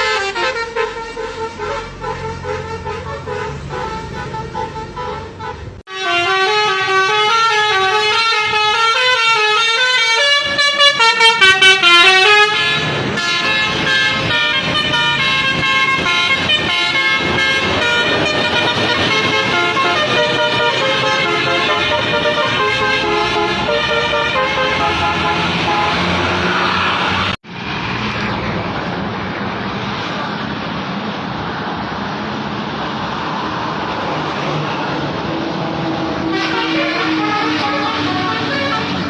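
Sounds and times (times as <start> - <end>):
bus musical air horn: 0.0 - 27.4, 35.7 - 39.0.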